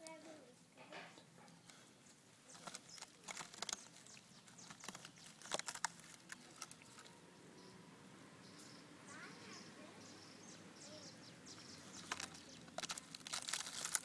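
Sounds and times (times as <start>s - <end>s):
animal gnawing on wood: 2.5s - 7.2s, 11.6s - 14.0s.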